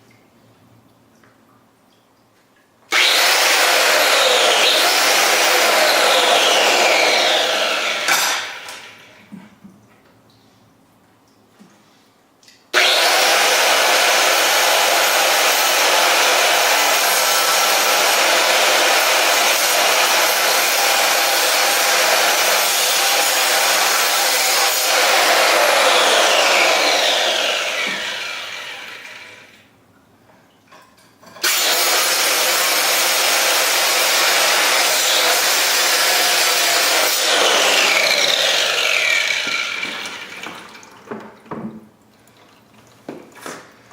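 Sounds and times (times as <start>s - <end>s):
tile saw cutting concrete: 2.9s - 9.1s, 12.8s - 29.6s, 31.4s - 40.8s.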